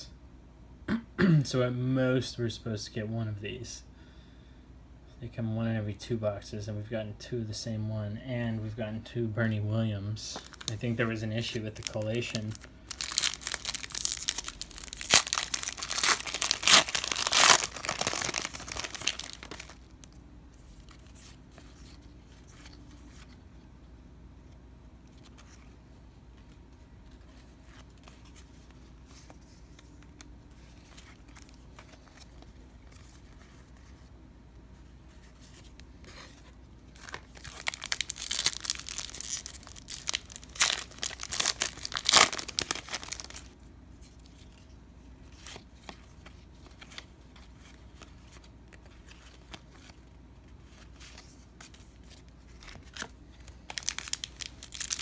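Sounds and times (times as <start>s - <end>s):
wrapper tearing and crinkling: 10.4s - 10.8s, 11.8s - 20.0s, 36.9s - 43.5s, 52.6s - 55.0s
card handling: 10.4s - 23.4s, 35.1s - 44.7s.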